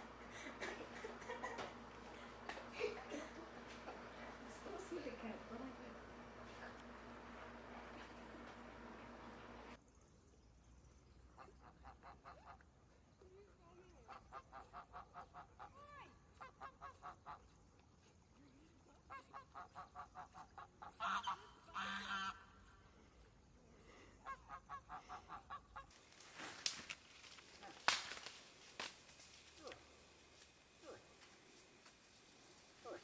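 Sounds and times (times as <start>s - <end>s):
goose-like bird honking: 19.3s - 22.6s.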